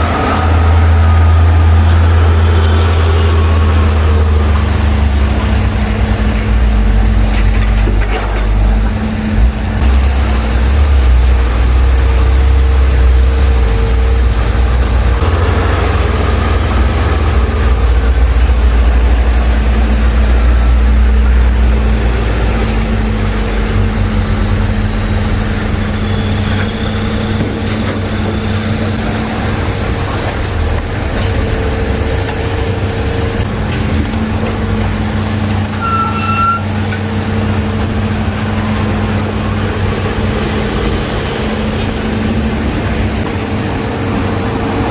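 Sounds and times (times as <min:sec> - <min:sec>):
diesel machinery running: 0:00.0 - 0:44.9
short high-pitched beep: 0:35.8 - 0:36.7.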